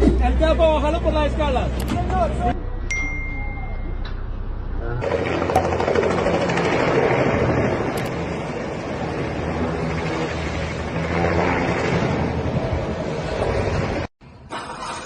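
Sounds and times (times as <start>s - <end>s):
helicopter turbine and rotor noise: 5.0s - 14.1s.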